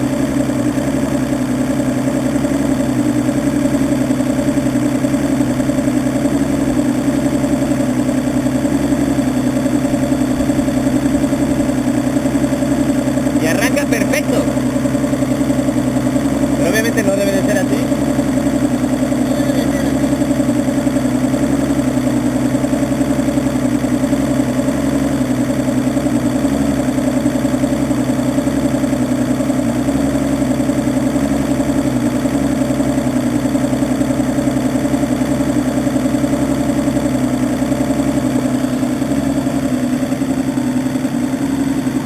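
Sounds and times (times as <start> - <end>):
outboard engine idling: 0.0 - 42.0.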